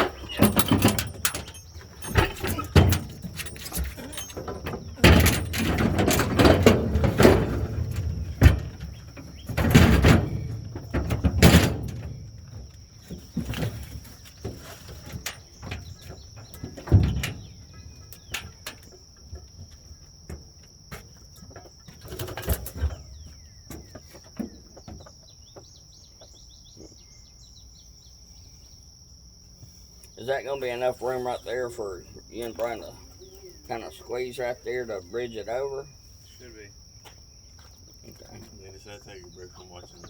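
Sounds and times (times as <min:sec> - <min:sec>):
bird chirps: 0:00.0 - 0:03.3, 0:22.8 - 0:29.0, 0:29.9 - 0:40.0
clunks and thuds of metal cart: 0:00.0 - 0:26.0.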